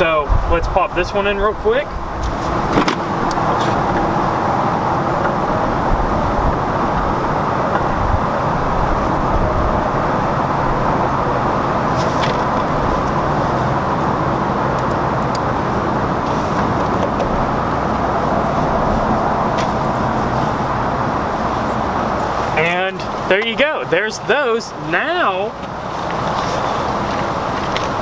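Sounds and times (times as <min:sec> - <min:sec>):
road traffic noise: 0:00.0 - 0:28.0.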